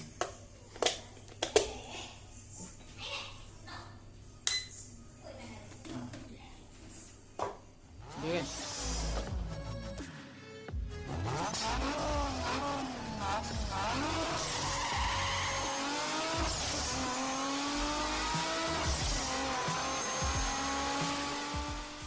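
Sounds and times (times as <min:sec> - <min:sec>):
car engines revving: 0:11.0 - 0:22.0.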